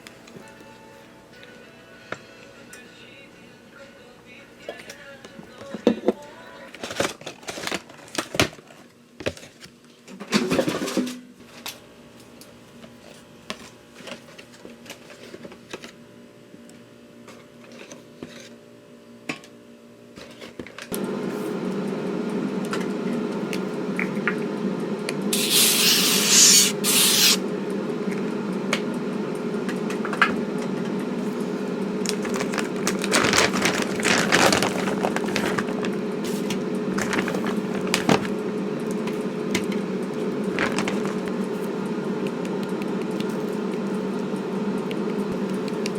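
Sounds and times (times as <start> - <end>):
appliance motor hum: 20.2 - 45.9
clicks and handling noises: 32.0 - 39.8.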